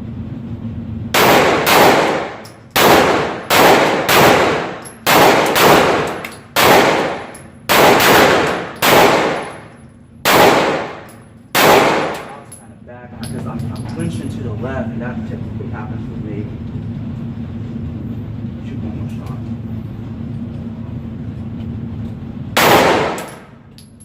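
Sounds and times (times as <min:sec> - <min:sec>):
pistol shots with echo: 0:01.2 - 0:12.5, 0:22.6 - 0:23.6.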